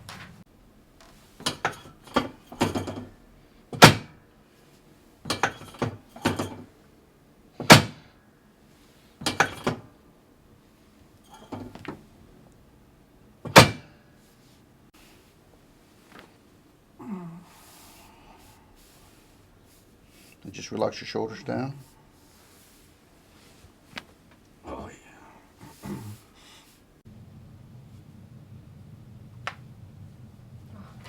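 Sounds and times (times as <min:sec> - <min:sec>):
adjustment table knocks and thunks: 0:01.0 - 0:03.1, 0:03.7 - 0:04.2, 0:05.2 - 0:06.7, 0:07.6 - 0:08.1, 0:09.2 - 0:09.9, 0:11.3 - 0:12.0, 0:13.4 - 0:13.9.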